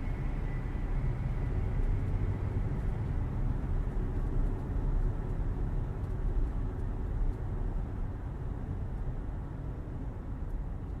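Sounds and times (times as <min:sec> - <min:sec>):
car road noise rumble: 0:00.0 - 0:11.0.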